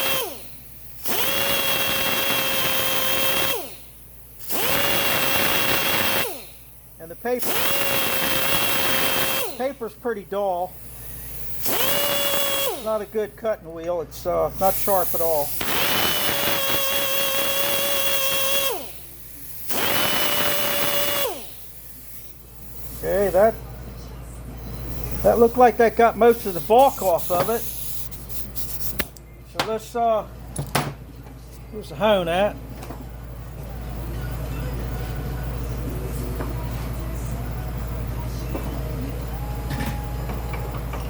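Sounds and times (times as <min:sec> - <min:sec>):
electric drill spinning sandpaper: 0:00.0 - 0:06.6, 0:07.4 - 0:09.8, 0:10.8 - 0:13.0, 0:14.6 - 0:23.4, 0:25.0 - 0:29.0.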